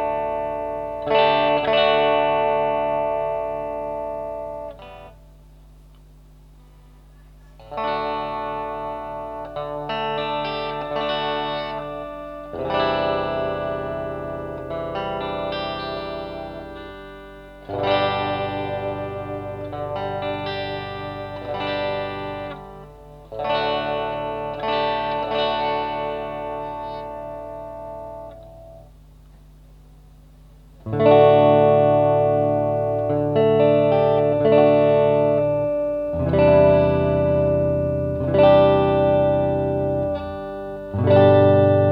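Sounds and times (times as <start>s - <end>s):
distorted electric guitar chords: 0.0s - 7.0s, 7.6s - 41.9s
backing track: 7.8s - 28.9s.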